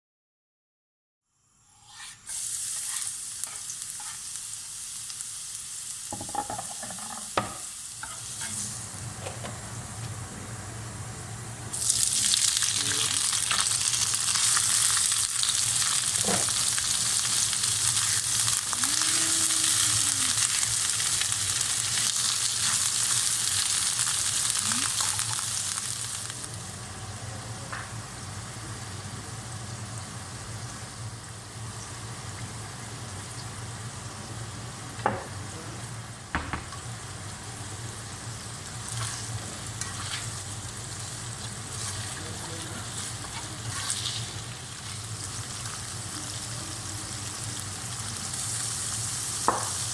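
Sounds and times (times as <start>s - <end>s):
food sizzling in hot oil: 1.3s - 49.9s
utensil knocking against pan: 36.4s - 36.8s.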